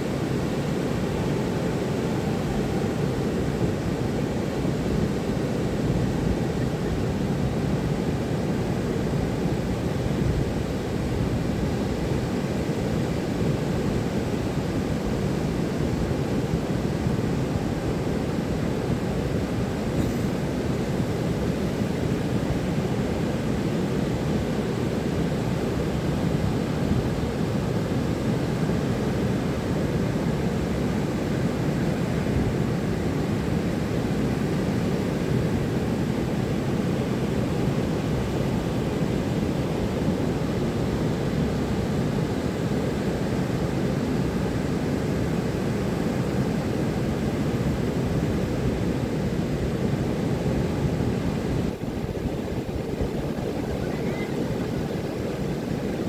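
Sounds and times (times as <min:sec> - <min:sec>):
ocean surf breaking: 0:51.3 - 0:56.0.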